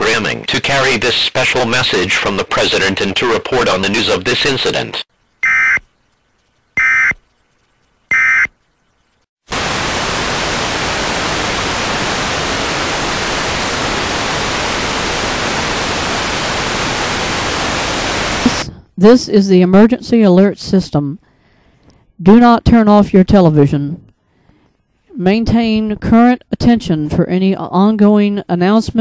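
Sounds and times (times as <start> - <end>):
harsh screeching data bursts: 5.4 - 5.8, 6.8 - 7.2, 8.1 - 8.5
static hiss: 5.4 - 18.7.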